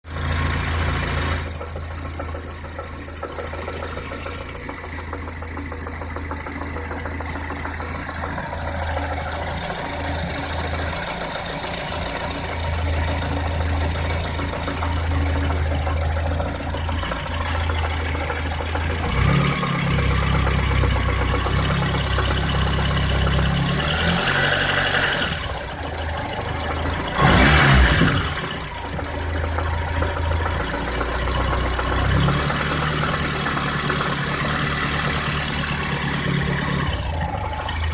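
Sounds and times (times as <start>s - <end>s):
car engine idling with knock: 0.0s - 37.9s
engine revving: 0.0s - 37.9s.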